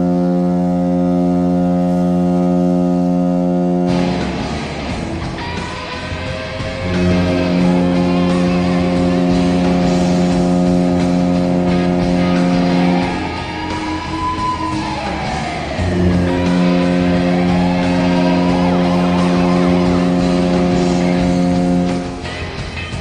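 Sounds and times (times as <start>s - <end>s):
arena goal horn blasts: 0.0s - 5.1s, 6.8s - 14.5s, 15.8s - 22.3s
rock music: 3.6s - 23.0s.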